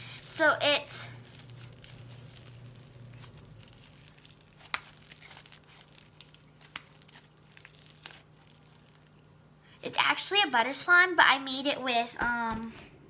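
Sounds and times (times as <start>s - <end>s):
slime crinkling and tearing: 0.0s - 9.4s.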